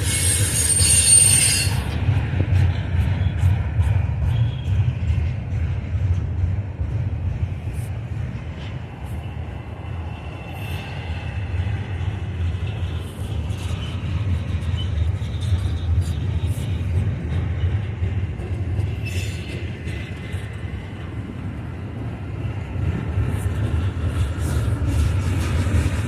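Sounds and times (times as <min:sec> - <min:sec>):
faint wheel squeal: 0:00.0 - 0:01.8
freight train cars rolling on rails: 0:00.0 - 0:26.0
wind rumble on microphone: 0:01.7 - 0:26.0.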